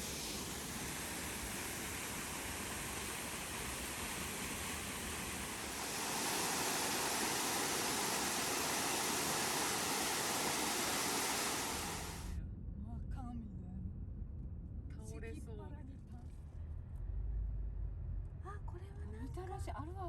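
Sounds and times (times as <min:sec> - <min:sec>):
steady rushing noise: 0:00.0 - 0:12.3.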